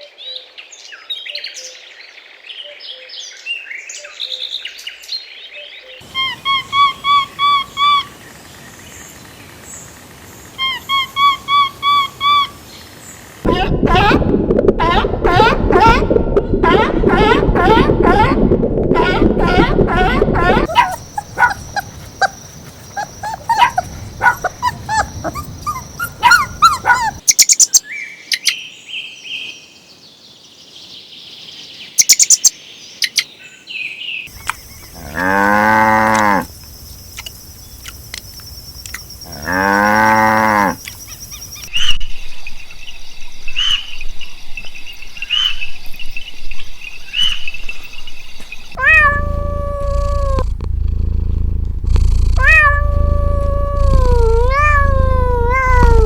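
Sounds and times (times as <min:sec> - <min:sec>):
cow mooing: 0:35.0 - 0:36.5, 0:39.3 - 0:40.8, 0:48.8 - 0:56.0.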